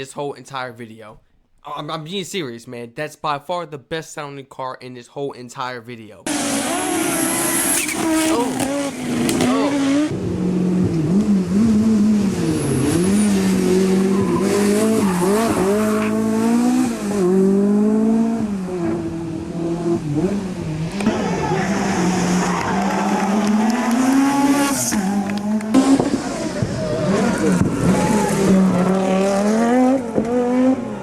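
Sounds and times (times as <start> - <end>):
rally car engine revving: 6.3 - 31.0
tyres skidding: 6.3 - 31.0.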